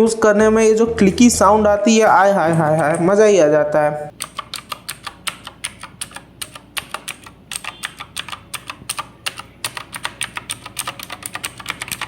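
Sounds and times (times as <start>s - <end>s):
clicky mechanical keyboard typing: 4.2s - 12.0s.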